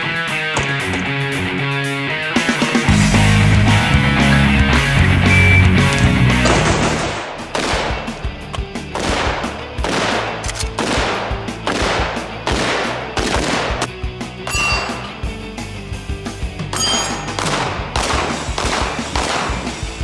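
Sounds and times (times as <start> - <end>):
background music: 0.0 - 20.0
gunshots with short echo: 5.9 - 15.2, 16.7 - 20.0.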